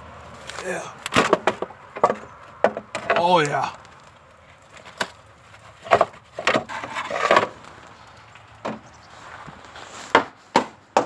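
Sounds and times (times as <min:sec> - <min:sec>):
knocks and clunks of parts: 0:01.0 - 0:03.4, 0:05.8 - 0:07.6.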